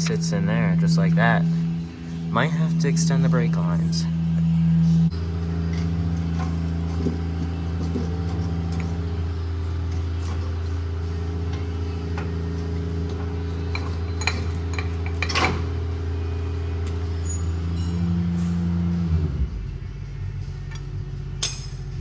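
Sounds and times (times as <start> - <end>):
steady low hum: 0.0 - 22.0
metal tools clinking and knocking: 5.1 - 15.9, 20.7 - 21.9.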